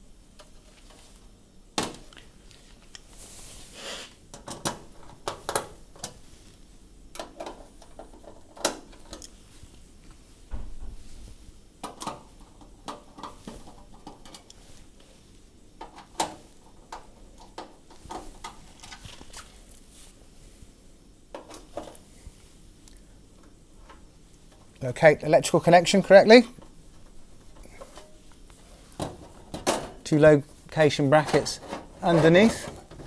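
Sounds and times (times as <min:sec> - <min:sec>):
low thud: 0:10.5 - 0:11.1.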